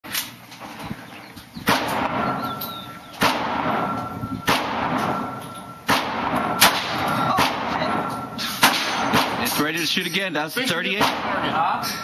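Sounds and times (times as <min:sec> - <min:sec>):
revolver shots with echo: 0:03.2 - 0:09.6, 0:11.0 - 0:11.5.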